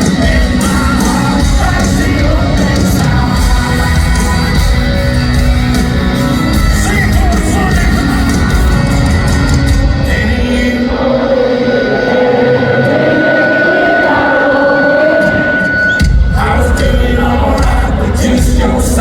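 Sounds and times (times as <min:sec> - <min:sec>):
live country band playing: 0:00.0 - 0:11.1, 0:16.0 - 0:19.0
crowd shouting along: 0:00.0 - 0:19.0
lead vocal singing: 0:00.0 - 0:19.0.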